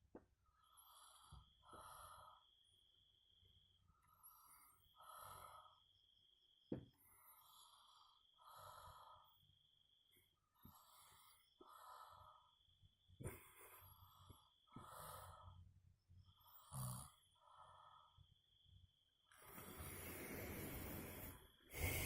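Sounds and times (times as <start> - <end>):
man snoring: 16.4 - 17.3, 19.4 - 22.0.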